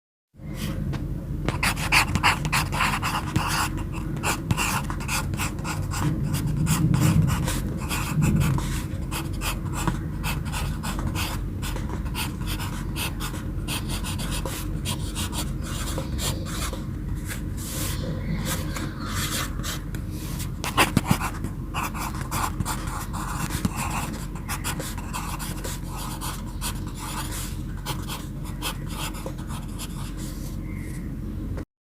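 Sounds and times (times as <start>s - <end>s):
low hum: 0.4s - 31.6s
pencil scratching on paper: 1.5s - 30.5s.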